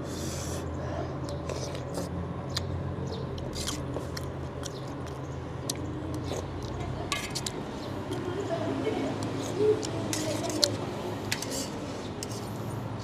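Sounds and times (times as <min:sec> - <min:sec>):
wet smacks and clicks: 0:01.2 - 0:02.7, 0:03.3 - 0:08.2
chewing: 0:01.2 - 0:08.3, 0:09.1 - 0:12.6
slurping soup: 0:01.3 - 0:02.2, 0:03.4 - 0:05.2, 0:09.2 - 0:12.8.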